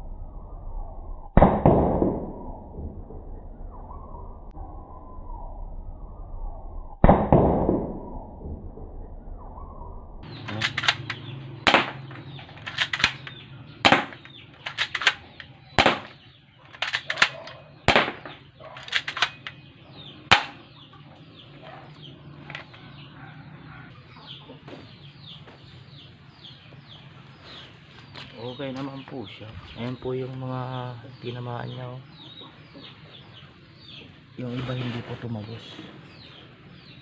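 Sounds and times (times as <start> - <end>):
airsoft pistol snaps: 10.4 - 19.6, 20.3 - 20.6.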